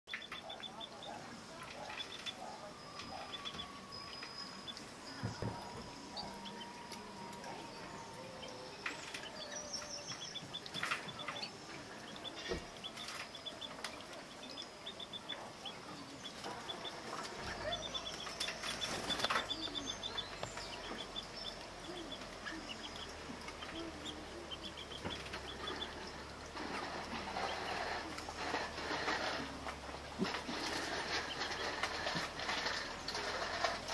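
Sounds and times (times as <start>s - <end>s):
canaries chirping: 0.0s - 33.9s
wing flutters: 8.1s - 33.9s.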